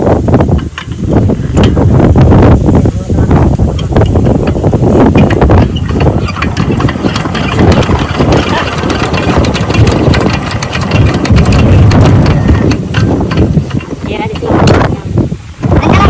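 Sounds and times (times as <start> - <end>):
diesel engine chugging: 4.0 - 15.2.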